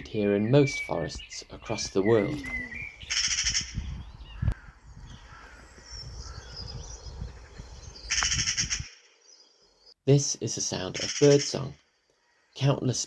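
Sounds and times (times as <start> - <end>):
songbird chirps: 0.0 - 13.0
harsh rasping crow calls: 2.3 - 9.3, 11.0 - 12.6.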